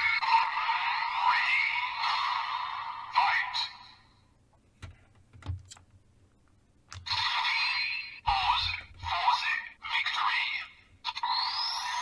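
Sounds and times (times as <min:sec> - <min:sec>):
toy speaker sound effects and music: 0:07.0 - 0:12.0.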